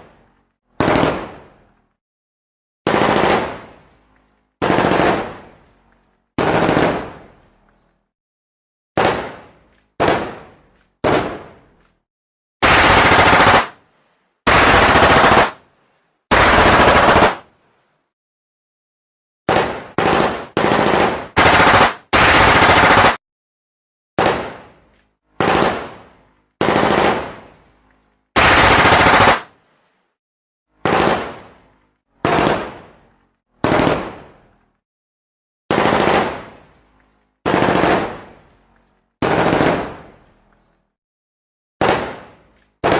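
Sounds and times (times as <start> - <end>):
automatic gunfire bursts: 0.8 - 1.3, 2.9 - 3.6, 4.6 - 5.4, 6.4 - 7.2, 12.6 - 13.8, 14.5 - 15.6, 16.3 - 17.4, 19.5 - 23.2, 25.4 - 25.9, 26.6 - 27.3, 28.4 - 29.5, 30.8 - 31.3, 32.2 - 32.7, 33.6 - 34.2, 35.7 - 36.5, 37.4 - 38.2, 39.2 - 40.0.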